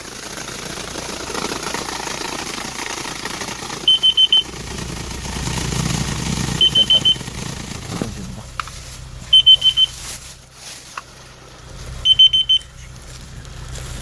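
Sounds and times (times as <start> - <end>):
vehicle engine running: 0.0 - 14.0
high-pitched alarm beeps: 3.9 - 4.6, 6.6 - 7.3, 9.3 - 10.0, 12.0 - 12.7.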